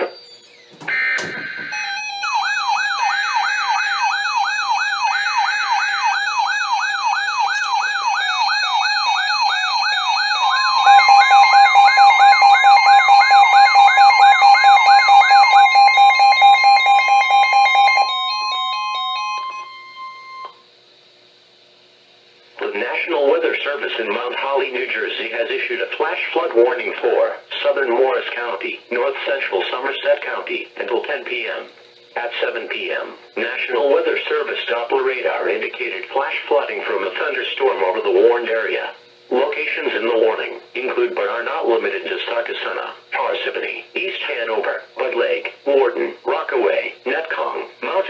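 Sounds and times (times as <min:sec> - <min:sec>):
steady alert tone: 0:00.0 - 0:20.5
screeching digital data bursts: 0:00.0 - 0:20.6
warbling siren-like alarm: 0:00.0 - 0:20.6.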